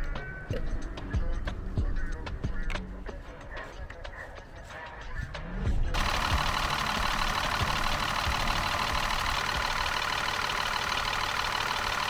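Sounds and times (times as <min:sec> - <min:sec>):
car engine idling: 0:06.0 - 0:12.0.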